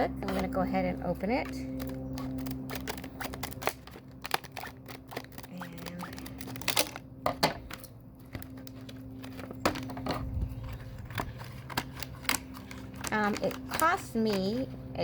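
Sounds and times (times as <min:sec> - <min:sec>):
packaging clicks and rustles: 0:00.2 - 0:15.0
packaging snaps: 0:01.4 - 0:10.0, 0:10.6 - 0:14.7.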